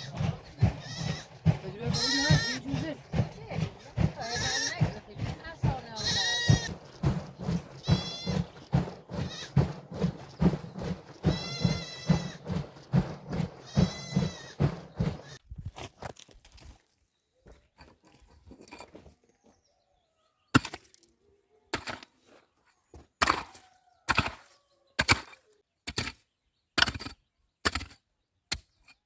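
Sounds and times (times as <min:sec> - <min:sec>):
rapid knocks: 0:00.0 - 0:15.4
goats bleating: 0:00.7 - 0:02.6, 0:04.2 - 0:04.8, 0:08.0 - 0:08.3, 0:11.3 - 0:12.1, 0:13.8 - 0:14.1.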